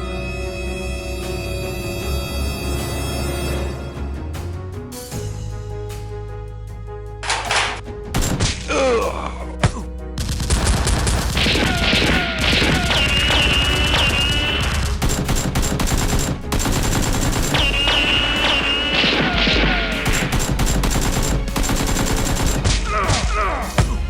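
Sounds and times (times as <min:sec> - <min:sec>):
background music: 0:00.0 - 0:24.0
gunshots: 0:07.2 - 0:08.7, 0:10.2 - 0:23.7
rapid automatic gunfire: 0:10.2 - 0:22.8.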